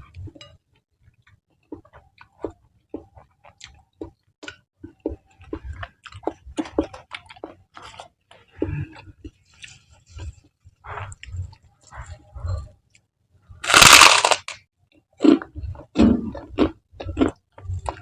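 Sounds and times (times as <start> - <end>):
chewing with wet mouth smacks: 1.1 - 11.9.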